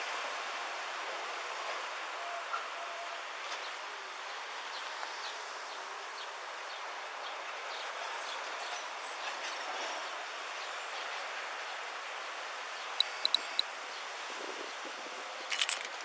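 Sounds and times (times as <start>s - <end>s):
hiss-like outdoor rush: 0.0s - 13.0s, 13.6s - 16.0s
faint short chirps and ticks: 13.0s - 13.6s.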